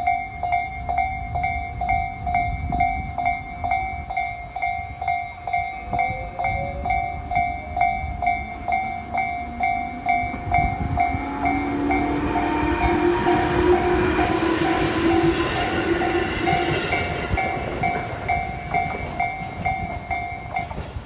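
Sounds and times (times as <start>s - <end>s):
level crossing bell ringing: 0.0s - 20.8s
train approaching with whine and rumble: 0.0s - 21.0s.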